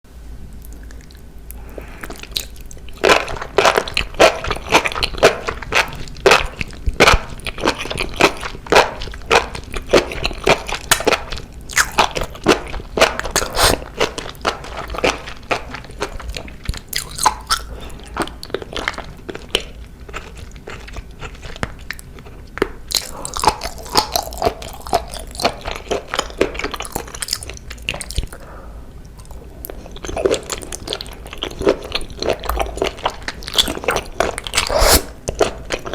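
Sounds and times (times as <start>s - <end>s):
person chewing: 0.6s - 35.9s
mouth clicks and smacks: 9.7s - 12.4s, 13.0s - 13.9s, 26.8s - 28.4s, 29.2s - 35.5s.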